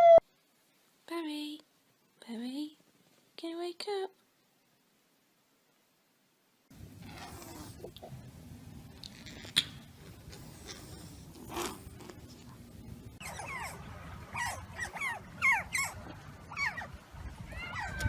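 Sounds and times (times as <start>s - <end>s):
low background hum: 0.0s - 18.0s
animal whining: 13.2s - 18.0s.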